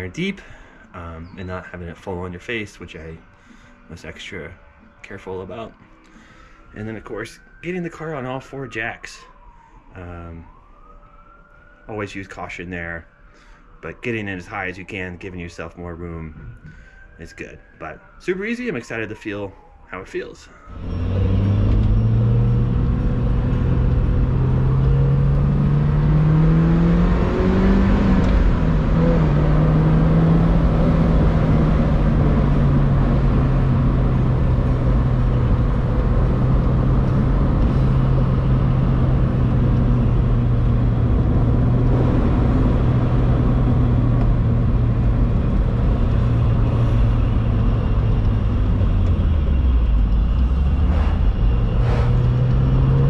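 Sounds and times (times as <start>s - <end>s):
car engine running: 31.7s - 53.0s.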